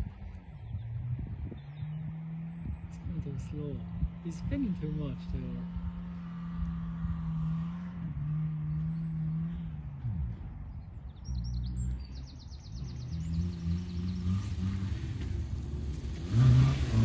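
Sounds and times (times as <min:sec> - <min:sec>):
birds chirping: 0:00.0 - 0:16.0
car engine revving: 0:00.0 - 0:17.0
wheels spinning on wet grass: 0:13.4 - 0:17.0.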